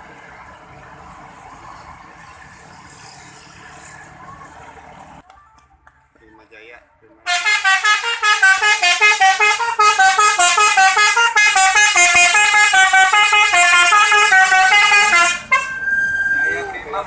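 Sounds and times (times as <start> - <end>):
bus melody horn playing fast tune: 7.3 - 16.3.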